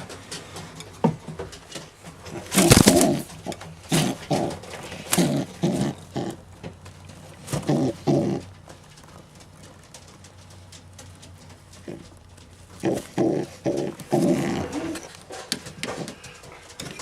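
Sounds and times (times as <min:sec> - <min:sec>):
pigeons cooing: 0:00.0 - 0:17.0
rustling burst: 0:02.3 - 0:05.8.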